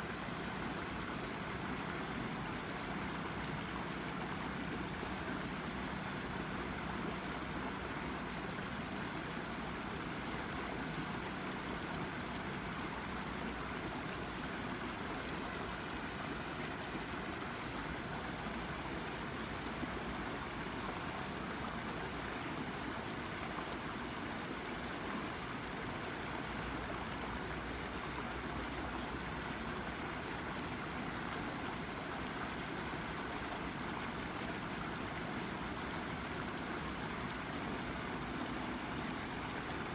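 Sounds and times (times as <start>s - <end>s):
brook babbling over rock: 0.0s - 39.9s.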